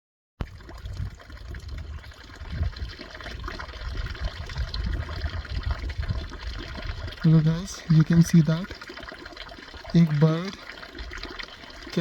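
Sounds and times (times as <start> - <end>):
water trickling: 0.4 - 12.0
low rumbling on microphone: 0.5 - 8.4.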